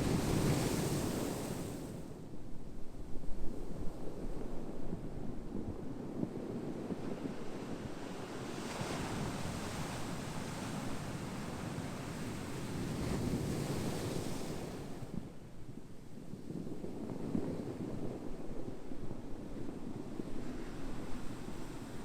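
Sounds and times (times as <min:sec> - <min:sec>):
ocean waves on shore: 0:00.0 - 0:02.1.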